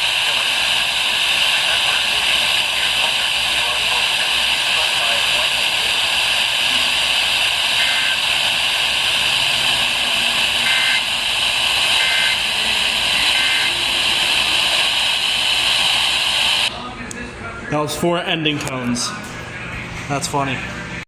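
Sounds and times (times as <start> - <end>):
radio static hiss: 0.0 - 16.8
two-pitch digital squawks: 10.6 - 11.1, 12.0 - 12.5, 13.2 - 14.0.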